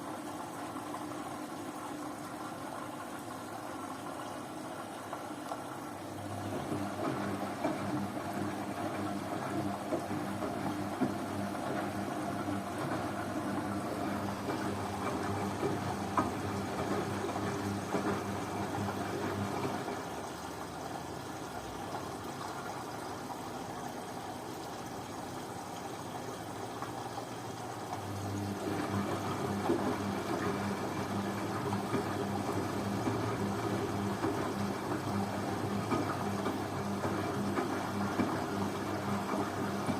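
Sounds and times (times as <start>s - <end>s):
washing machine motor humming: 0.0s - 39.9s.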